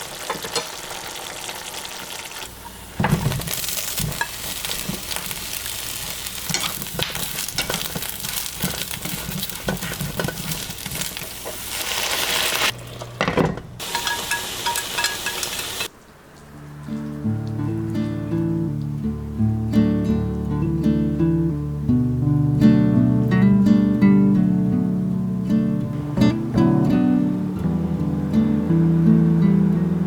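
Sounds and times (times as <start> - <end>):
food sizzling in a frying pan: 0.0 - 13.1, 13.8 - 15.9
utensil scraping a pan: 6.0 - 12.7
acoustic guitar music: 16.5 - 30.0.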